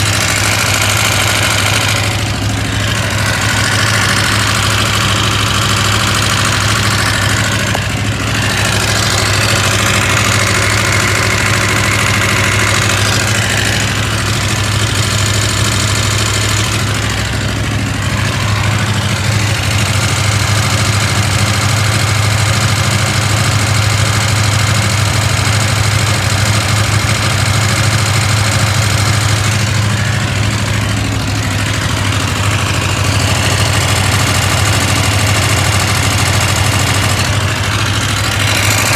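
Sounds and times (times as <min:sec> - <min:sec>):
engine rattle: 0:00.0 - 0:38.9
motorcycle engine idling: 0:00.0 - 0:38.9.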